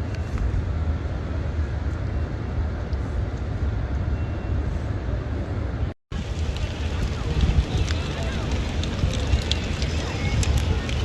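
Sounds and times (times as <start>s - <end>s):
wind buffeting microphone: 0.0s - 11.0s
steady rain hiss: 6.1s - 11.0s.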